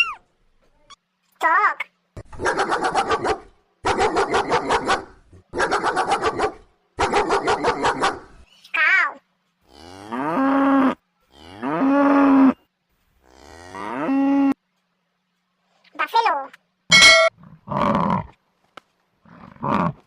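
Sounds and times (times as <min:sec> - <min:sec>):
dog barking: 0:02.4 - 0:08.3
cow mooing: 0:09.7 - 0:12.6, 0:13.3 - 0:14.6.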